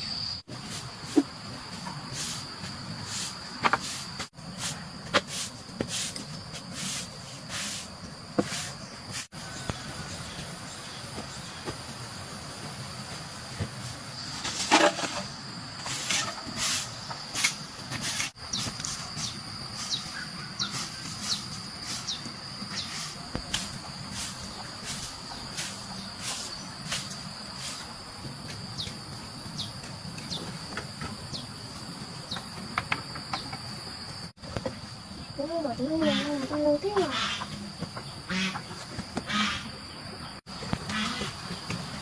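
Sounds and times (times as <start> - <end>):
insects droning: 0.0 - 42.0.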